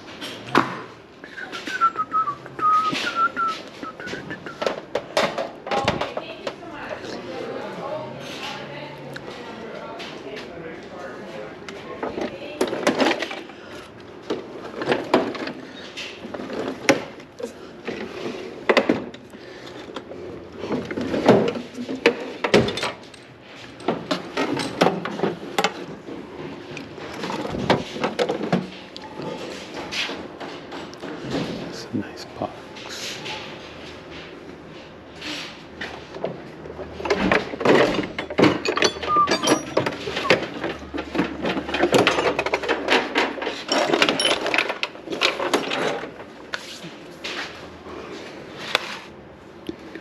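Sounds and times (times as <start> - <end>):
hard objects knocking and clattering: 3.0 - 6.6, 19.8 - 31.6, 36.1 - 46.4
knocks and clinks of tools: 37.0 - 46.1.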